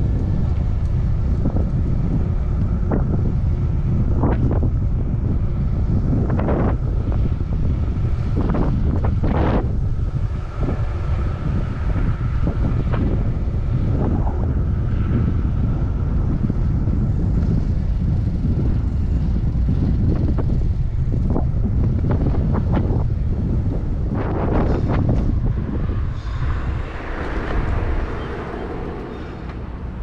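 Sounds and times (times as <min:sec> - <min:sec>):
wind buffeting microphone: 0:00.0 - 0:30.0
faint high whine: 0:24.0 - 0:30.0.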